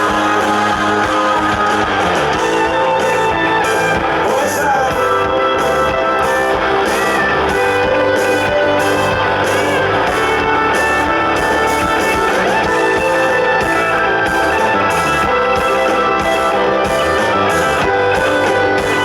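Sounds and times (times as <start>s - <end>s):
live rock band playing: 0.0s - 19.0s
strummed electric guitars: 0.0s - 19.0s.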